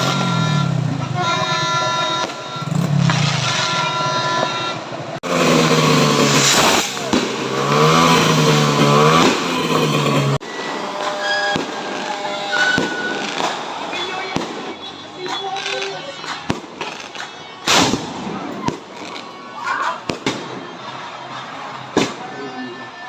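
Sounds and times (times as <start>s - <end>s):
engine revving: 5.1s - 10.4s.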